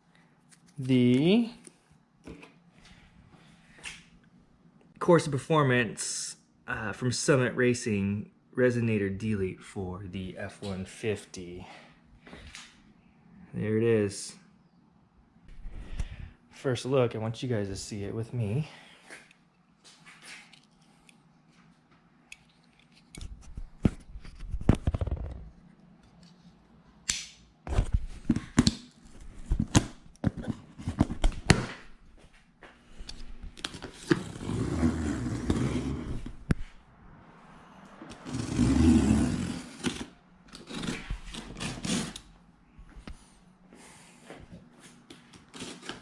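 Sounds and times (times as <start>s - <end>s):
cardboard tearing and rustling: 38.2s - 42.2s.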